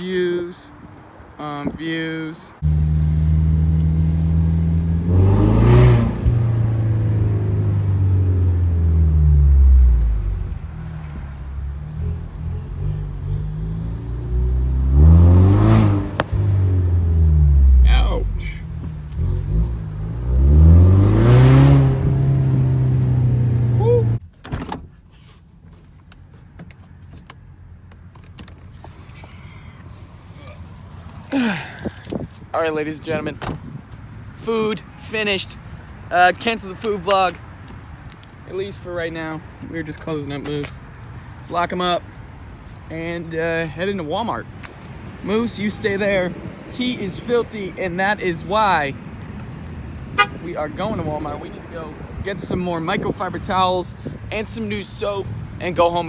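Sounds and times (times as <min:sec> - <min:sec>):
vehicle engines running: 0:02.3 - 0:24.2
car engine idling: 0:02.6 - 0:05.1
vehicle passing close by: 0:02.6 - 0:24.2.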